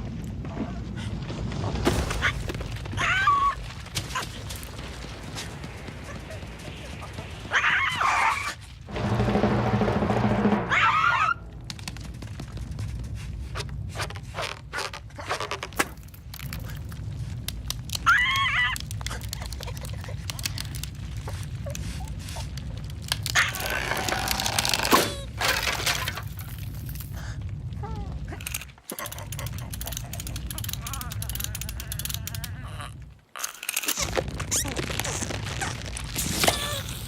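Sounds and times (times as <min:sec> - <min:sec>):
low steady rumble: 0:08.6 - 0:15.3.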